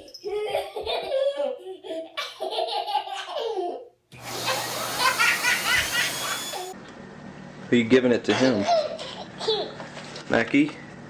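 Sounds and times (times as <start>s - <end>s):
baby laughing: 0.0s - 3.9s, 4.5s - 6.4s, 8.5s - 9.8s
high-pitched squealing: 4.2s - 6.8s.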